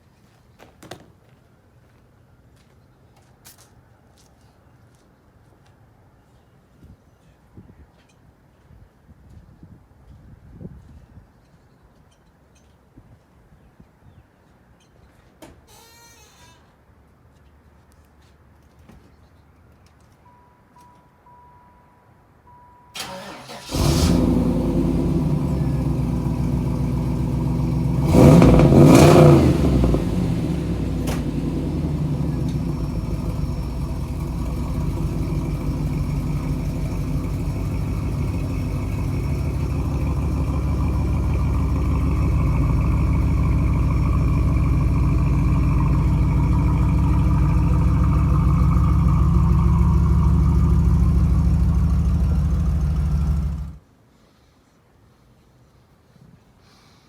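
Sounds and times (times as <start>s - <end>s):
car engine cranking and starting: 23.0s - 53.8s
car engine idling: 23.0s - 53.8s
car engine revving: 23.2s - 53.8s.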